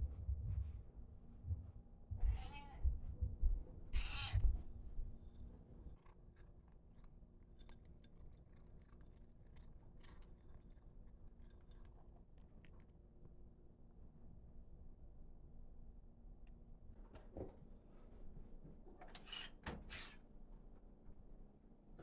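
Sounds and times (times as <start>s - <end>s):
cat meowing: 2.2s - 2.9s, 4.0s - 4.5s.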